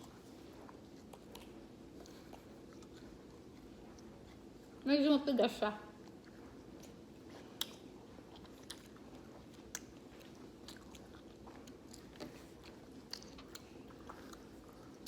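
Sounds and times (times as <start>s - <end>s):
people chewing candy: 0.0s - 4.8s, 5.8s - 15.0s
mouth clicks and smacks: 6.7s - 9.0s.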